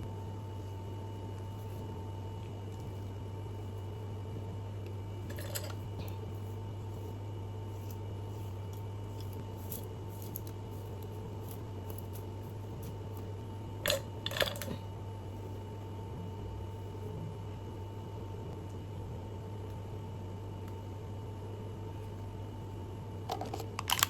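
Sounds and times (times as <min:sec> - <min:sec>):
low room tone hum: 0:00.0 - 0:24.0.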